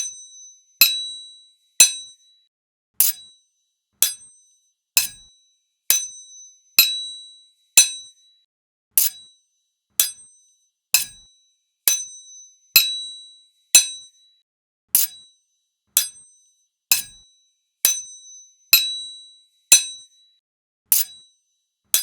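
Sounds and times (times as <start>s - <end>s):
sword blades clashing: 20.9s - 21.2s.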